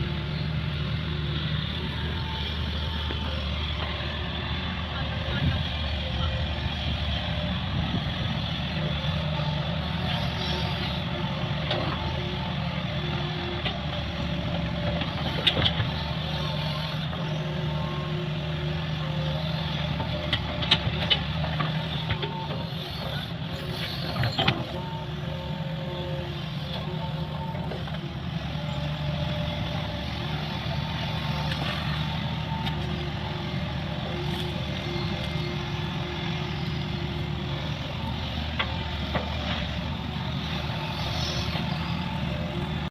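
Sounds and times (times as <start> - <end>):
excavator diesel engine running: 0.0 - 42.9
hydraulic whine: 0.0 - 42.9.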